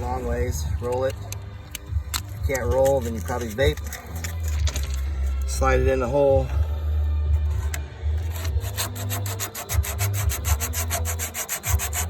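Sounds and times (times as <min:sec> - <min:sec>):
sandpaper rasping in metal hole: 0:07.6 - 0:12.0.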